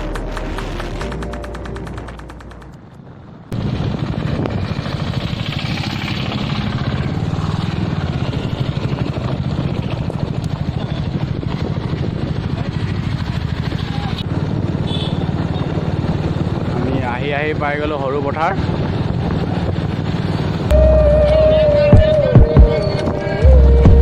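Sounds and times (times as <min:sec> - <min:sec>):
background music: 0:00.0 - 0:02.9, 0:20.7 - 0:24.0
motorcycle engine running: 0:00.0 - 0:24.0.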